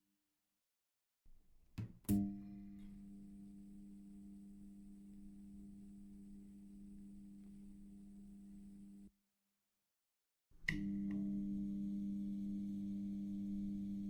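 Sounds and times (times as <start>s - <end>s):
fluorescent light humming: 2.2s - 9.1s, 10.7s - 14.0s.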